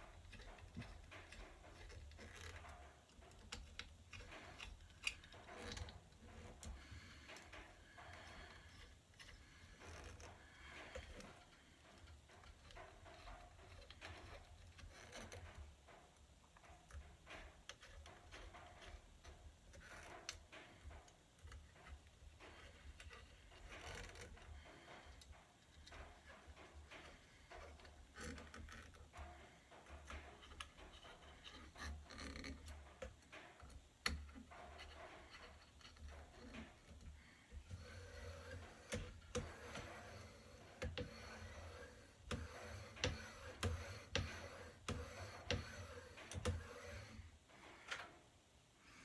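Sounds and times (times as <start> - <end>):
clicks and taps of hand tools: 37.7 - 47.2.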